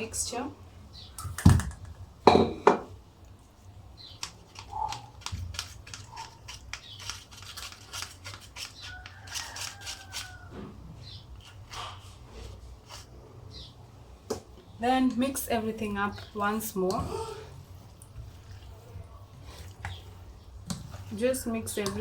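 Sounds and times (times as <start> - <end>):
loud knocks of utensils: 1.4 - 2.9.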